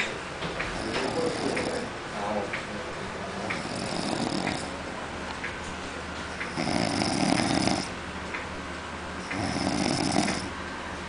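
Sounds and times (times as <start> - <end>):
person snoring: 0.8 - 1.9, 3.6 - 4.7, 6.5 - 7.9, 9.3 - 10.5.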